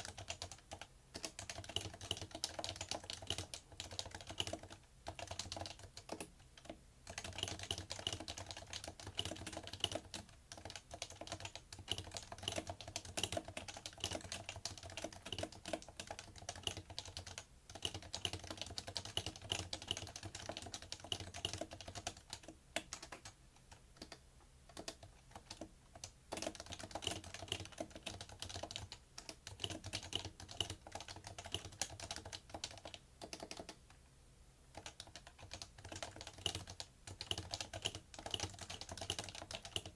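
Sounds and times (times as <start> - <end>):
keyboard typing: 0.0 - 33.9, 34.7 - 39.9.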